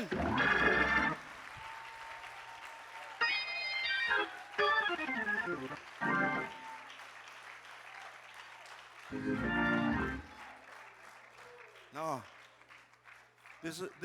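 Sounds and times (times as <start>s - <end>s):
organ chords and runs: 0.0s - 1.4s, 3.2s - 6.6s, 9.1s - 10.3s.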